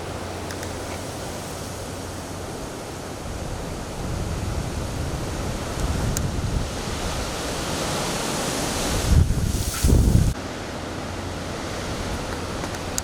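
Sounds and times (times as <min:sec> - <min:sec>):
strong wind on microphone: 0:00.0 - 0:10.4
low rumbling wind buffets: 0:00.0 - 0:13.0.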